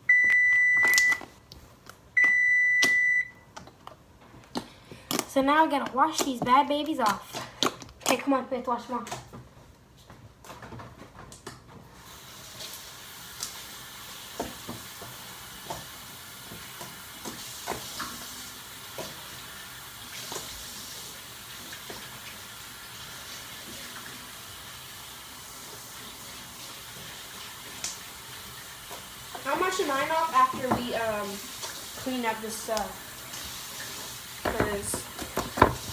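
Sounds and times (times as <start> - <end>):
tap water running into sink: 12.0 - 35.9
small knocks: 34.4 - 35.9.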